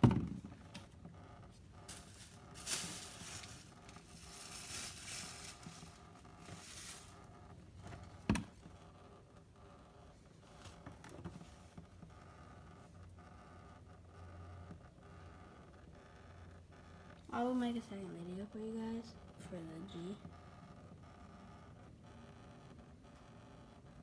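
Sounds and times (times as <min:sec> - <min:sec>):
faint scraping and rustling: 0:00.4 - 0:17.3.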